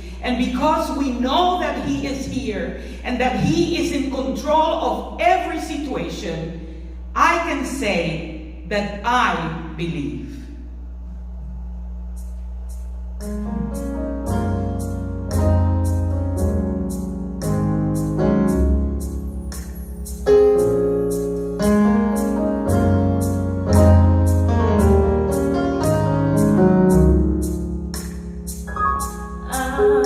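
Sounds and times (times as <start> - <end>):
deep bass line: 10.0 - 30.0
sustained keyboard chords: 10.6 - 30.0
high ticking beat: 10.8 - 22.4.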